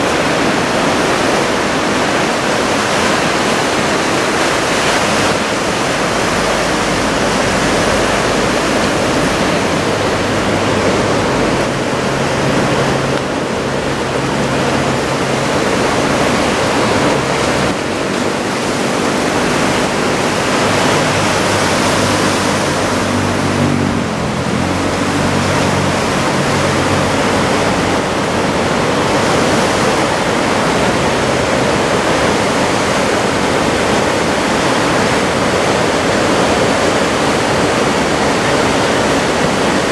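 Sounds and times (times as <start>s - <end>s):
heavy surf breaking: 0.0s - 39.9s.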